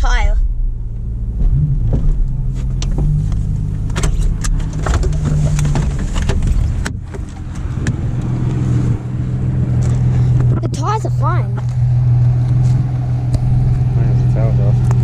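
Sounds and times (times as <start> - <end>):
car engine idling: 0.0 - 15.0
sharp clicks and knocks: 1.4 - 8.6.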